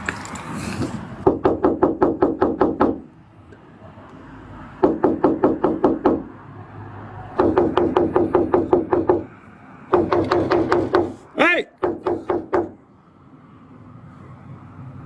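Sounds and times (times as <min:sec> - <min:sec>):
rapid knocking on a door: 0:01.2 - 0:03.0, 0:04.8 - 0:06.3, 0:07.4 - 0:09.3, 0:09.9 - 0:11.2, 0:11.8 - 0:12.8.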